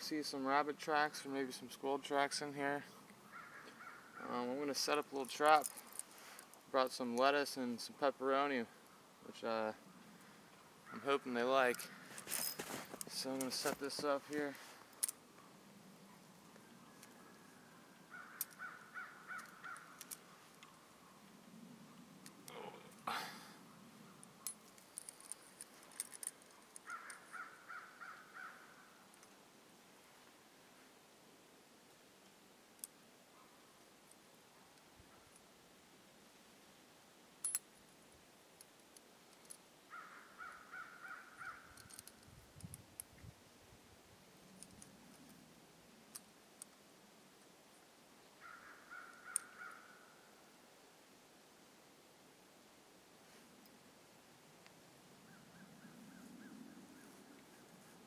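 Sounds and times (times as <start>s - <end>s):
distant harsh bird call: 3.2s - 4.4s, 16.7s - 20.1s, 26.8s - 29.0s
crow cawing: 3.3s - 4.3s, 18.1s - 20.0s, 26.8s - 28.9s, 39.9s - 41.7s, 48.4s - 50.0s
crunch: 11.7s - 15.2s
metal trap clicking and rattling: 24.3s - 27.4s, 37.4s - 37.7s, 41.7s - 43.1s.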